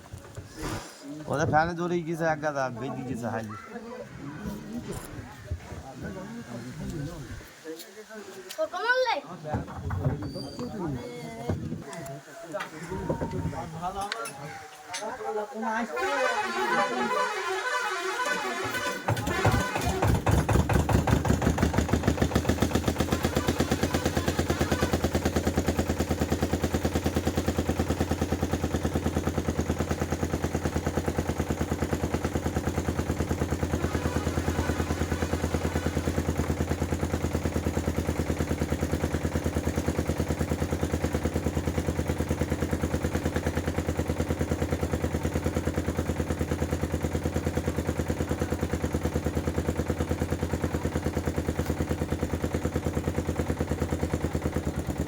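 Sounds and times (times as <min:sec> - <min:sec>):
boat engine chugging: 0:15.7 - 0:55.0.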